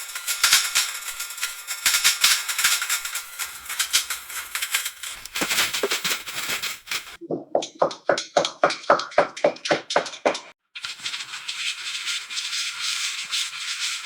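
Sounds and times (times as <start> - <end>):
dishwasher water spray: 0.0 - 7.2
rhythmic swishing: 3.1 - 10.6.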